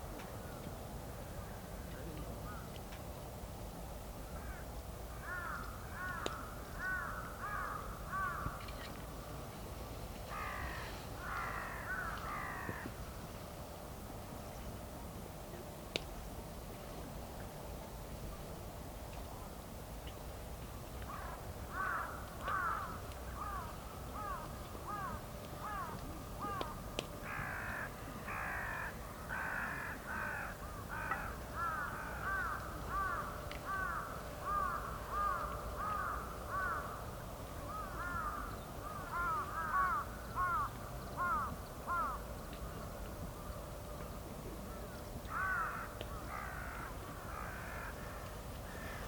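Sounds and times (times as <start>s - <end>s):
crows cawing: 5.2s - 8.6s, 10.3s - 12.9s, 21.1s - 37.0s, 37.7s - 42.2s, 45.3s - 49.0s.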